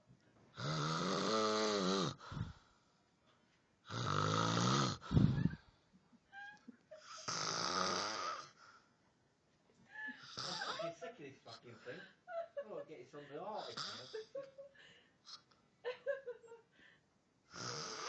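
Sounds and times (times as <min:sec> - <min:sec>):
man snoring loudly: 0:00.6 - 0:02.5, 0:03.9 - 0:05.4, 0:07.3 - 0:08.5, 0:17.5 - 0:18.0.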